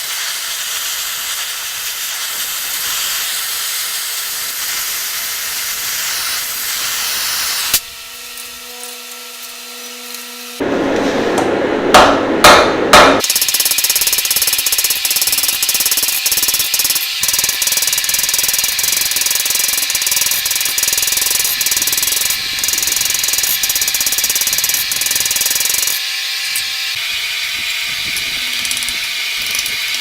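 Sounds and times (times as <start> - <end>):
power hammer pounding steel: 10.6 - 26.8.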